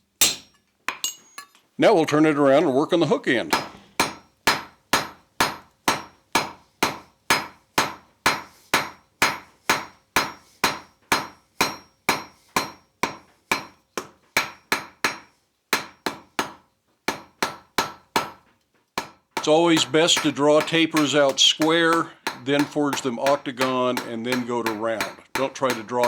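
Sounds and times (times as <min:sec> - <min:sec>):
hammer striking metal on anvil: 0:00.2 - 0:01.6, 0:03.5 - 0:18.4, 0:19.0 - 0:26.0.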